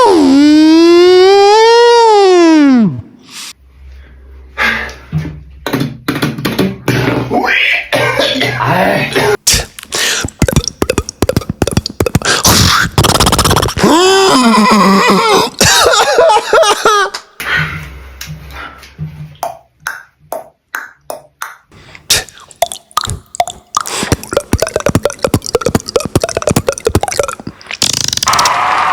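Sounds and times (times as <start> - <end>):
mouth clicks and pops: 9.4 - 14.1, 19.4 - 28.4
person beatboxing: 9.5 - 14.1, 22.1 - 28.1
sliding pitched vocal sound: 9.5 - 15.6, 22.1 - 27.7.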